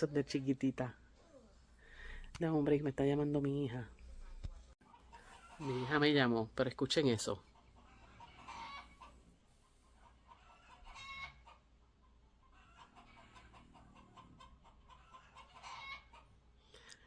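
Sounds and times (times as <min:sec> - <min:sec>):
hens clucking and cackling: 0:04.8 - 0:06.3, 0:07.2 - 0:16.6.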